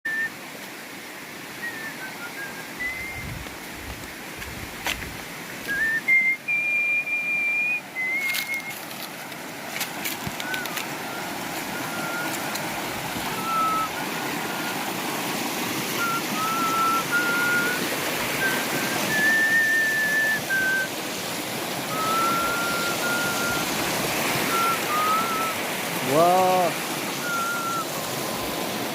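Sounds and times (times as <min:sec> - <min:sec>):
person whistling a slow tune: 0:00.1 - 0:00.4, 0:01.6 - 0:03.4, 0:05.6 - 0:09.1, 0:10.4 - 0:12.7, 0:13.3 - 0:14.8, 0:16.0 - 0:20.9, 0:21.9 - 0:23.8, 0:24.4 - 0:27.9
river water running: 0:00.1 - 0:28.9.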